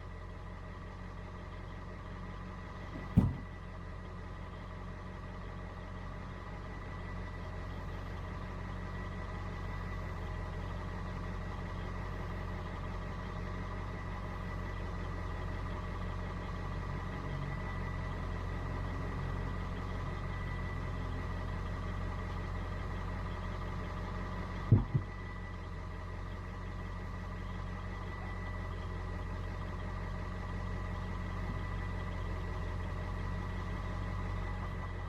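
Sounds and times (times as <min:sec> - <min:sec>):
sharp knocks: 0:03.0 - 0:03.5.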